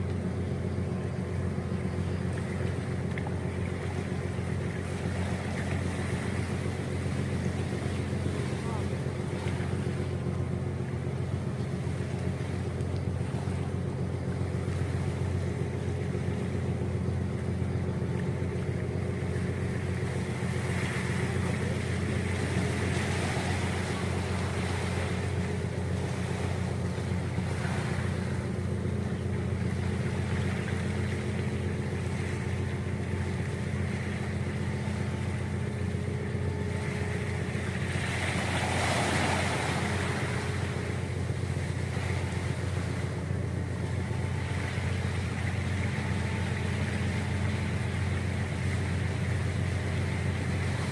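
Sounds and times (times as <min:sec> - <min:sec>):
ferry engines droning: 0:00.0 - 0:50.9
wind and water rushing: 0:00.0 - 0:50.9.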